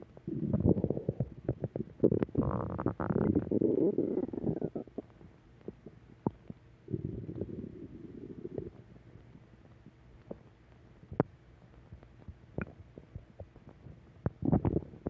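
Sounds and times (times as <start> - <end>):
stomach growling and gurgling: 0.2 - 9.4, 12.2 - 15.0.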